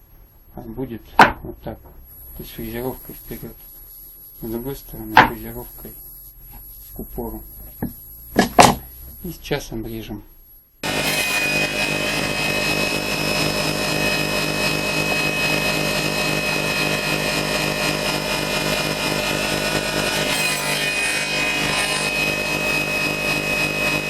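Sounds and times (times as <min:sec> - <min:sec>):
circular saw whining through wood: 0:10.8 - 0:24.0.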